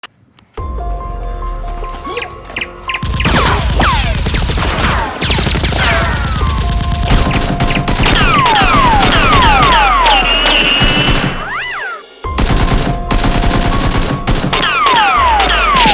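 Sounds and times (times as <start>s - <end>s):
music: 0.6s - 15.9s
rapid gunfire: 3.0s - 15.9s
falling whistles: 5.3s - 12.3s.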